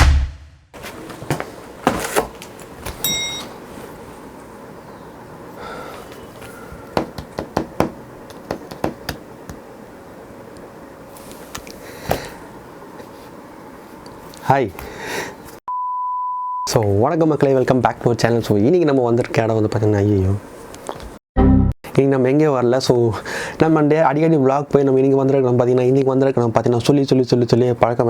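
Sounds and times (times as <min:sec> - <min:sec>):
short high beep: 0:15.7 - 0:16.7.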